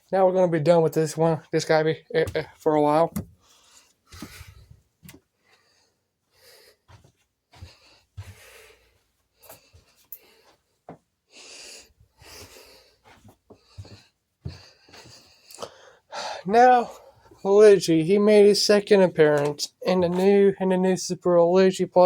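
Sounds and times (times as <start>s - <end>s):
person breathing close to microphone: 3.4s - 4.8s, 5.4s - 10.7s, 11.3s - 17.4s.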